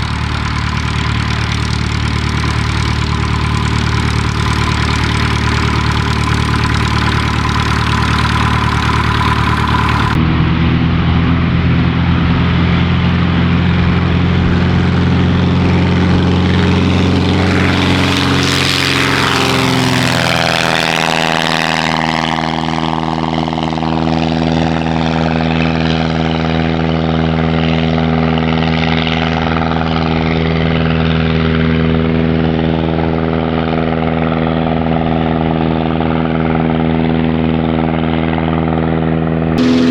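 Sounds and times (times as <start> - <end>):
light aircraft engine and propeller: 0.0 - 39.9.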